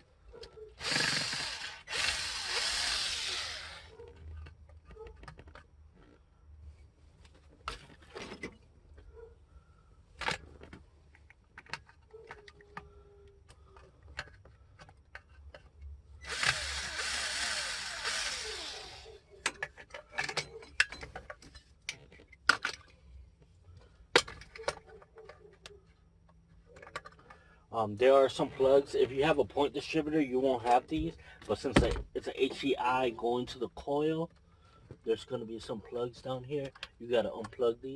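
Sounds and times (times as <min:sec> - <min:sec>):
hand tools clicking and rattling: 0:10.2 - 0:23.0, 0:24.2 - 0:27.4, 0:36.6 - 0:37.6.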